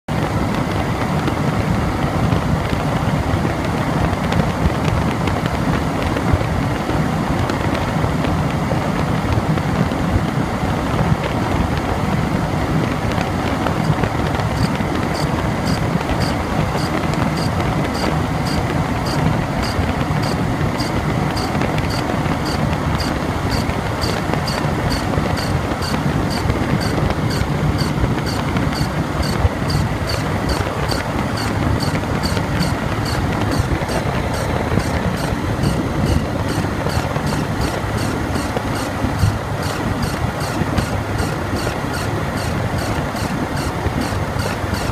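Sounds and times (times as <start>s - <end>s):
engine running: 0.1s - 44.9s
squeaking belt pulley: 13.0s - 44.9s.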